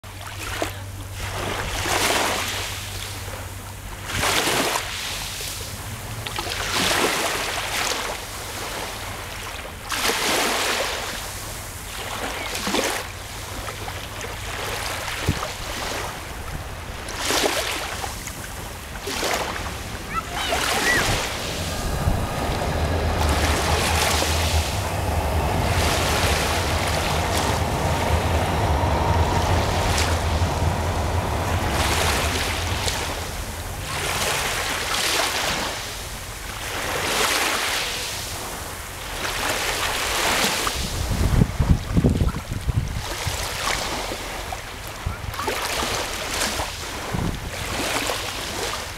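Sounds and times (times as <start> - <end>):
sea waves washing in: 0.2 - 48.9
low rumble: 13.4 - 37.4
wind buffeting microphone: 14.3 - 37.4, 38.2 - 45.4, 46.8 - 48.1.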